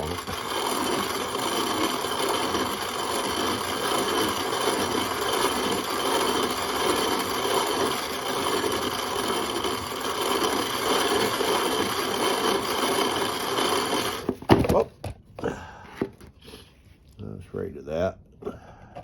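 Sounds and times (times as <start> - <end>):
hand mill grinding grain: 0.0 - 14.8.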